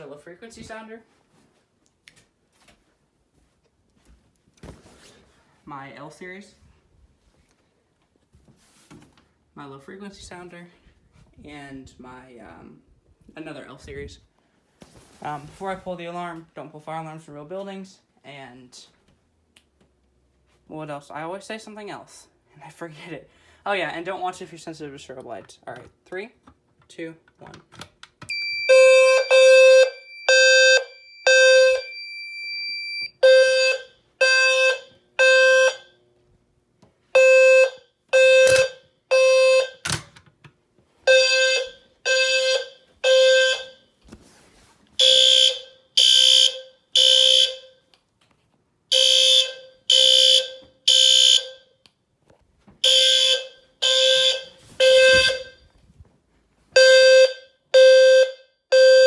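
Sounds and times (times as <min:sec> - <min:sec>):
fire alarm horns blasting: 0:28.3 - 0:35.9, 0:37.2 - 0:40.0, 0:41.1 - 0:43.9, 0:45.0 - 0:47.9, 0:48.9 - 0:51.8, 0:52.8 - 0:55.8, 0:56.8 - 0:59.0
low-frequency alarm sounder: 0:28.3 - 0:35.9, 0:37.2 - 0:39.8, 0:41.1 - 0:43.8, 0:45.0 - 0:47.7, 0:48.9 - 0:51.7, 0:52.8 - 0:55.6, 0:56.8 - 0:59.0.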